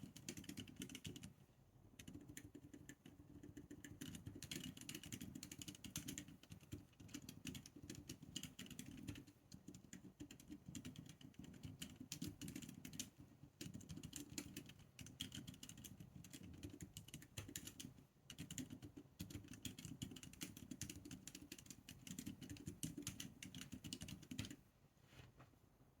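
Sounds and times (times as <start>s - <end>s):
soft mechanical keyboard typing: 0.0s - 24.7s.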